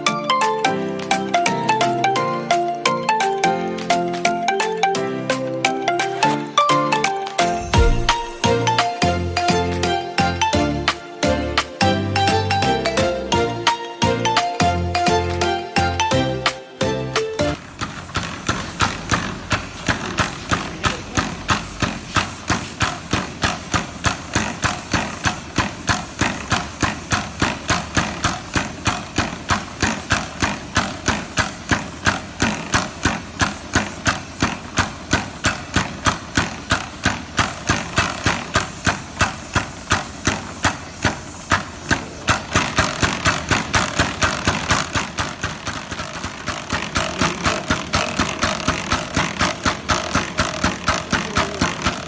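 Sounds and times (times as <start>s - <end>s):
diaphragm pump air exhaust pulsing: 17.6s - 52.0s.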